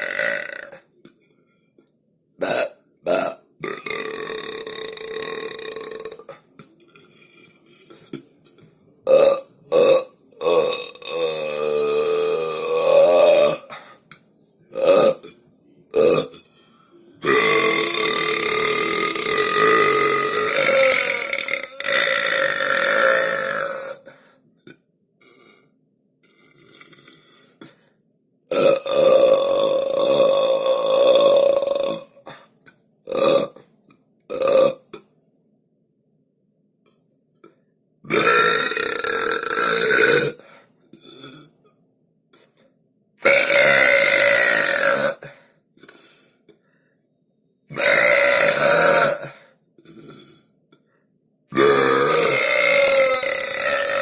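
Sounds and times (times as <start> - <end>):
person burping: 0.0 - 0.9, 2.4 - 8.2, 9.0 - 13.9, 14.7 - 16.5, 17.2 - 25.7, 28.5 - 32.5, 33.1 - 33.7, 34.3 - 35.1, 38.1 - 41.6, 43.2 - 46.0, 47.7 - 50.5, 51.5 - 54.0.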